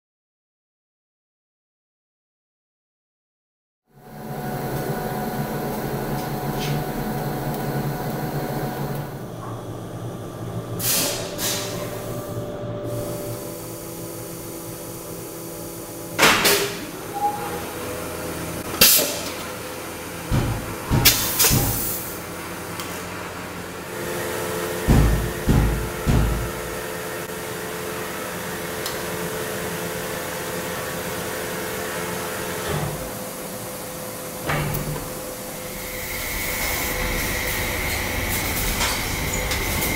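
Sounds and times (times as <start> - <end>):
machinery humming: 3.9 - 39.9
heavy low thumps of press: 24.8 - 26.7.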